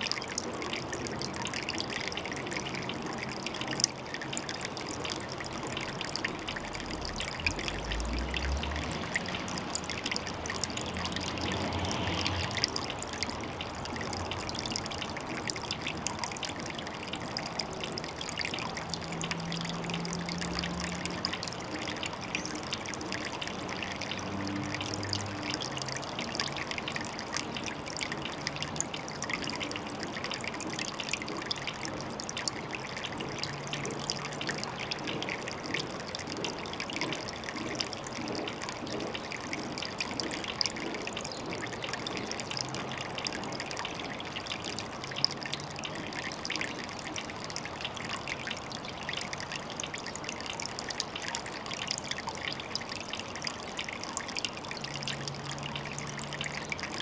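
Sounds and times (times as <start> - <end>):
water trickling: 0.0 - 57.0.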